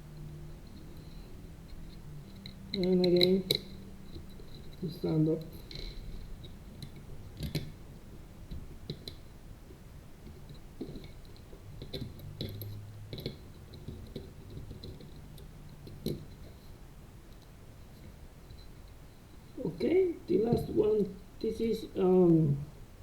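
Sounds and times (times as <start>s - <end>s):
faint low hum: 0.0s - 23.0s
small clicks and taps of handling: 0.2s - 7.8s, 8.4s - 16.7s.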